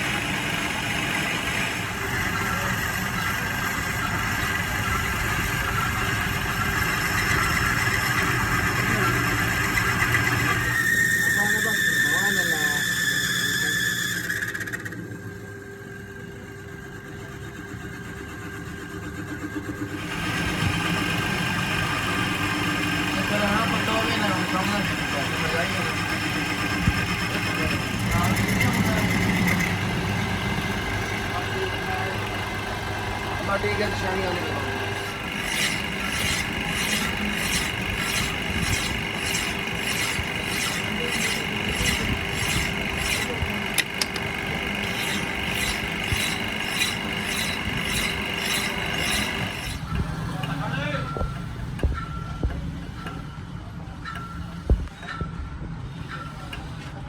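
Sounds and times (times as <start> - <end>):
motor whine: 0.0 - 57.0
rough machine noise: 0.0 - 57.0
hand rasping on metal shaft: 21.2 - 31.0, 33.8 - 49.9.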